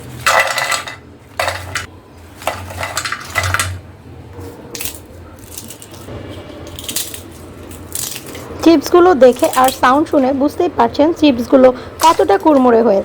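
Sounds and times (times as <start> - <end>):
chips crunching and crackling: 4.4 - 8.6, 9.2 - 10.2.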